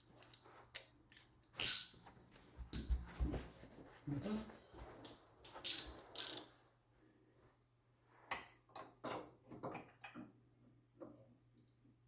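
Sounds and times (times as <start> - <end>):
metal tools clinking: 0.1 - 2.1, 5.0 - 6.6.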